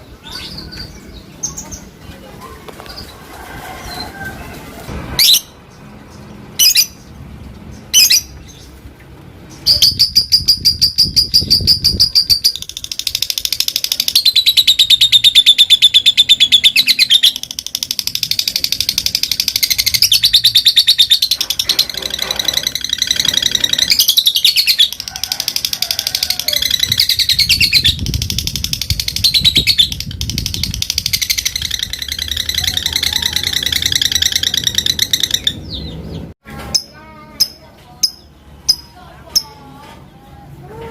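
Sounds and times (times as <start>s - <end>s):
lovebird chattering trill: 9.6s - 36.0s.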